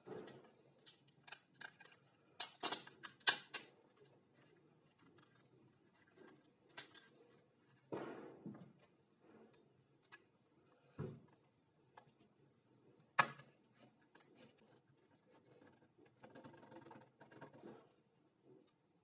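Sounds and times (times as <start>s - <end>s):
small parts and tools clicking: 0.0s - 7.4s.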